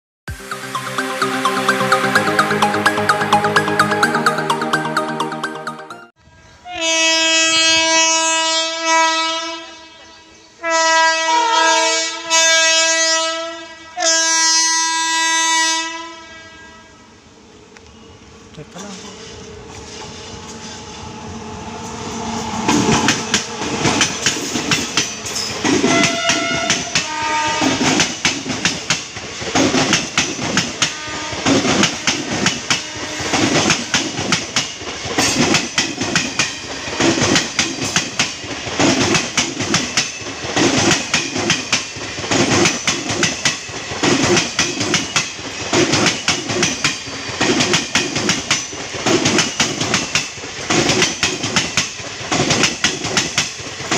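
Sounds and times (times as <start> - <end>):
train horn: 6.3 - 17.2, 19.1 - 28.0, 30.8 - 34.1
train wheels clattering over rail joints: 22.7 - 53.9.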